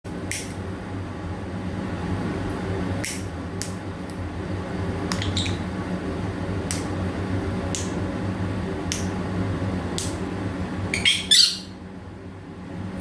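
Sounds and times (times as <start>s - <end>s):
steady low hum: 0.1s - 13.0s
parrot imitating lighter clicks: 5.1s - 5.6s.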